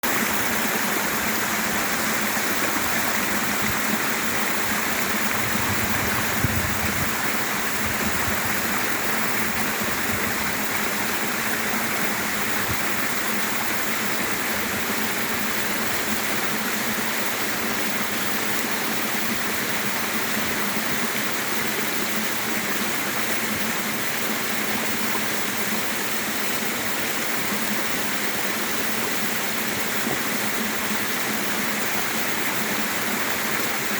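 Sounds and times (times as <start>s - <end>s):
waterfall rushing: 0.0s - 16.1s.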